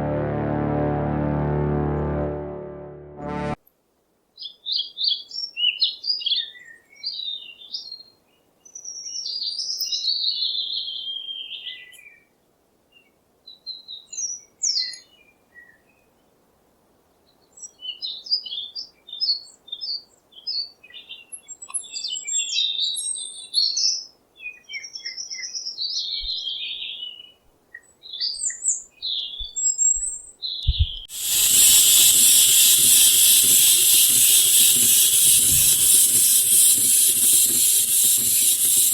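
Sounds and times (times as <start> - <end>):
songbird singing: 4.4 - 12.3, 12.9 - 16.2, 17.3 - 35.4
loud steady hiss: 31.1 - 38.9.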